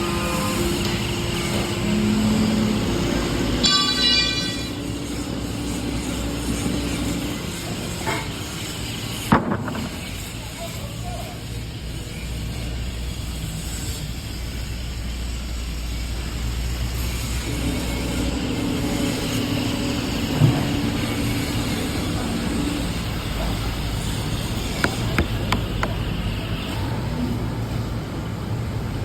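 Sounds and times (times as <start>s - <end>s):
steady drone: 0.0s - 8.8s, 14.2s - 26.5s
machinery humming: 0.0s - 9.3s, 11.6s - 27.8s.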